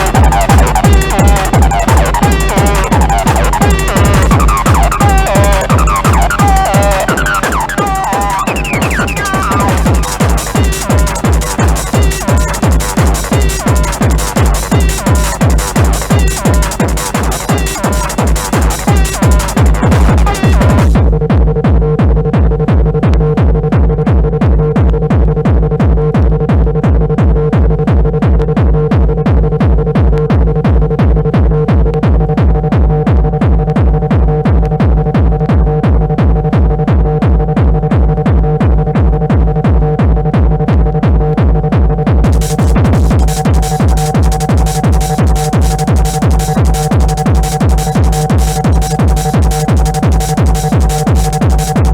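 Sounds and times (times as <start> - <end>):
held synth tones: 0.0 - 21.0
techno kick drum: 0.0 - 51.9.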